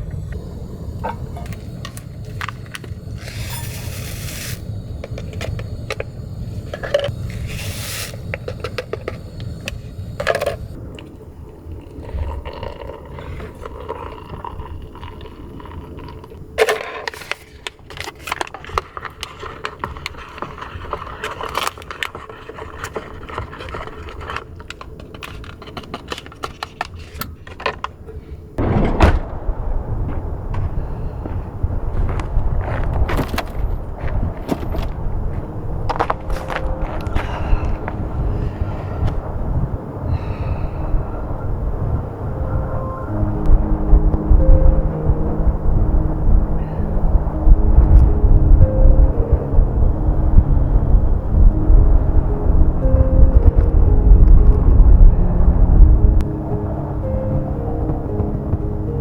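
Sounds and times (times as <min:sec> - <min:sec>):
low rumble: 0:00.0 - 0:14.2, 0:28.6 - 0:59.0
small objects clicking and scraping: 0:01.0 - 0:11.2, 0:11.8 - 0:28.3.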